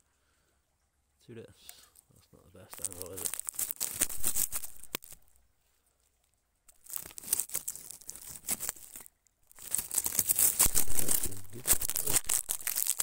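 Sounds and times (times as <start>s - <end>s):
rustling and crackling handling noise: 1.8s - 13.0s.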